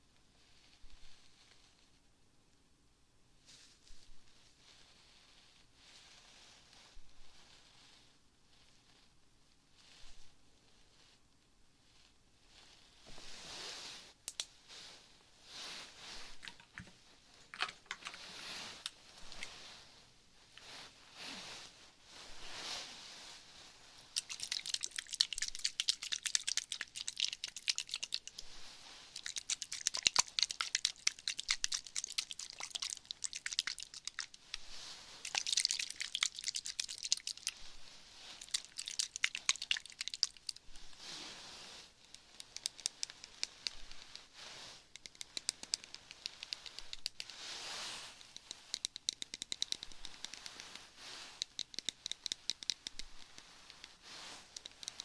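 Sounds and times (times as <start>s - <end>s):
crackly scratching and rubbing: 11.9s - 55.0s.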